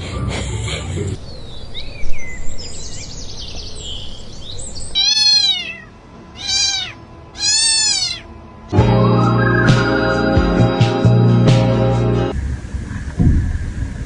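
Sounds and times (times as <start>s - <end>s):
cat meowing: 5.0s - 8.3s
music with held tones: 8.7s - 12.4s.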